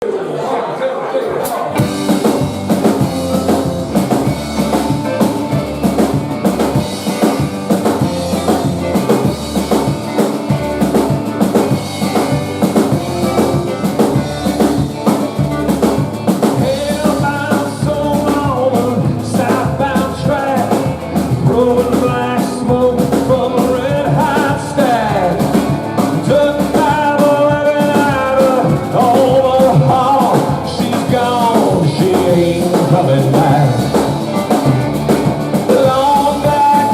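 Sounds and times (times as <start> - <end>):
rock band playing live: 1.4 - 36.9
drum kit steady beat: 1.8 - 36.9
person singing: 16.4 - 34.7, 35.5 - 36.9.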